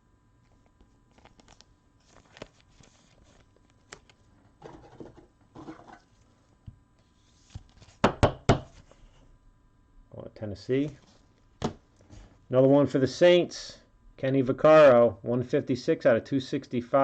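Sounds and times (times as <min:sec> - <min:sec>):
trading cards and sleeves handled: 0:00.4 - 0:09.2.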